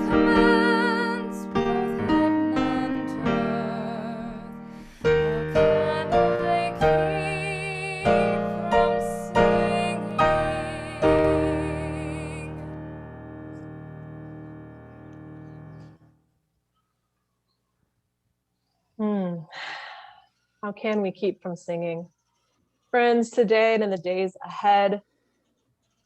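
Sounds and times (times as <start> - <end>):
singing voice with vibrato: 0.0 - 12.7
piano chords: 0.0 - 16.2.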